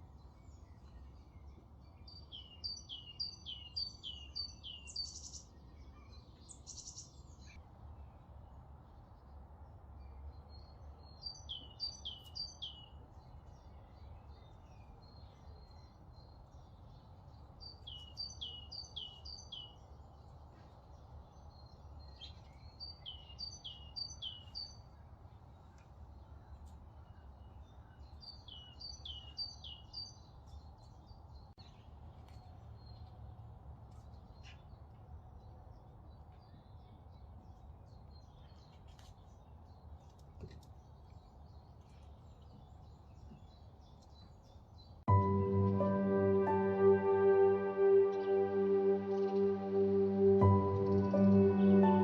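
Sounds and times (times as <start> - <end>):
songbird singing: 0.0 - 7.1, 10.1 - 19.8, 42.6 - 52.0
faint low rumble: 45.1 - 52.0.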